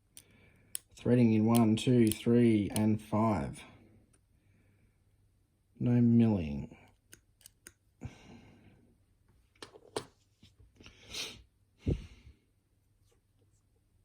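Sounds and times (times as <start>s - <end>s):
metal lock parts clicking: 0.7s - 2.9s, 7.1s - 7.8s
soft breathing: 3.6s - 5.1s, 10.8s - 12.5s.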